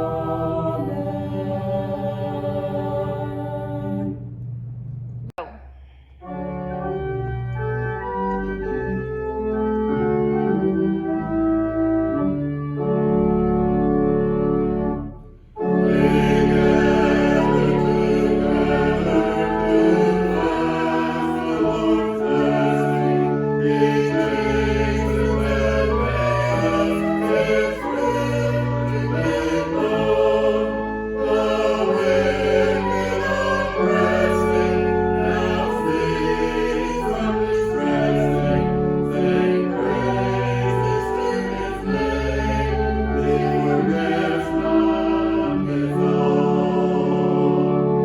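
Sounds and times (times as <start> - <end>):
choir singing: 0.0 - 4.3, 15.4 - 48.0
organ chords: 0.0 - 5.4, 6.2 - 48.0.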